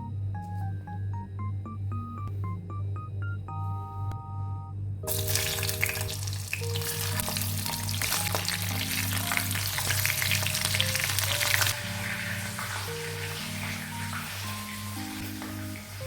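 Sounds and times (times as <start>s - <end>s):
food sizzling in hot oil: 5.1s - 16.0s.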